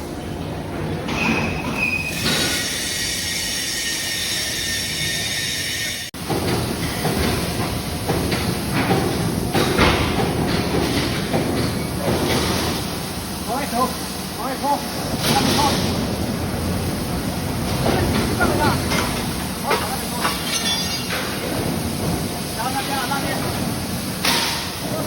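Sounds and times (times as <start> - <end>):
conveyor machinery squealing: 0.0 - 6.1, 13.4 - 23.9
machinery clattering and knocking: 6.2 - 25.0.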